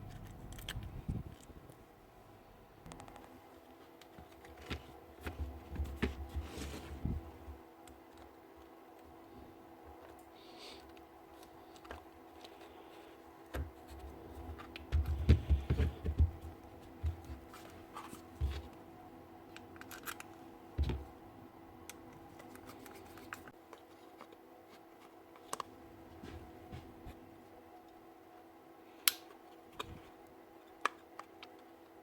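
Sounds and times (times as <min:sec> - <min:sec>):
faint steady hum: 0:00.0 - 0:32.0
clicks and scrapes of small parts: 0:10.0 - 0:13.1, 0:19.5 - 0:20.4.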